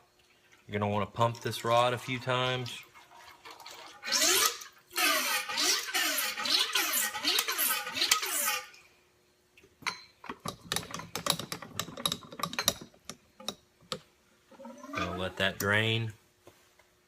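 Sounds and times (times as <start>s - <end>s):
oil squelching through fork damper: 0.3s - 8.8s.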